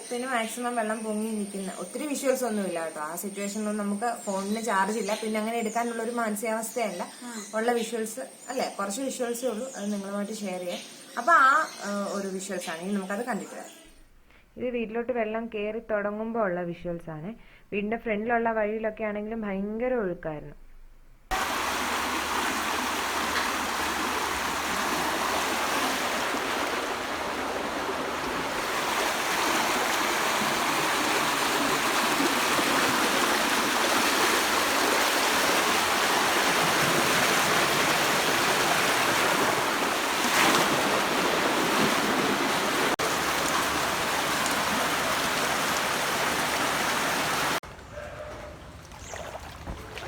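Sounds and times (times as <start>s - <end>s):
floodwater rushing: 21.3s - 50.0s.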